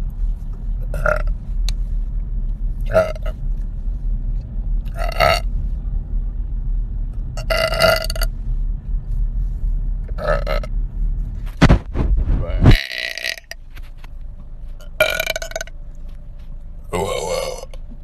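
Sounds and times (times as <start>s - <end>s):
low rumble: 0.0s - 18.0s
woman burping: 16.9s - 17.8s.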